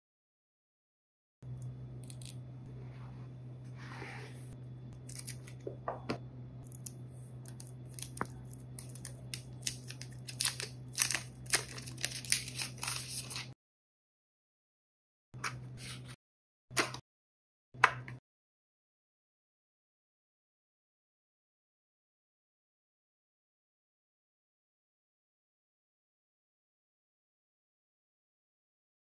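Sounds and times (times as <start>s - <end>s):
steady low hum: 1.4s - 13.5s
packaging rustling: 7.5s - 13.5s
packaging wrap tearing: 7.5s - 13.5s.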